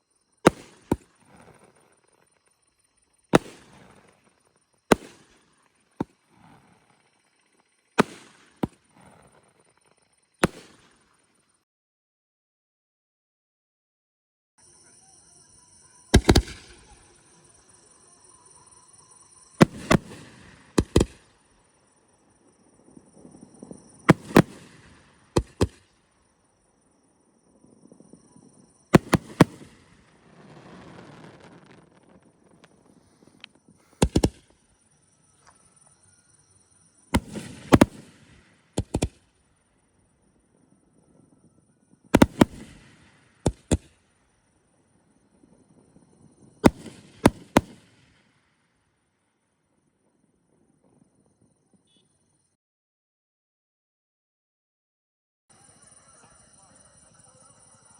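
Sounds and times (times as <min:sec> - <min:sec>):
firework shells banging: 0:00.4 - 0:02.2, 0:03.3 - 0:06.7, 0:08.0 - 0:09.6, 0:19.6 - 0:21.4, 0:23.5 - 0:25.8, 0:28.9 - 0:30.0, 0:30.7 - 0:34.6.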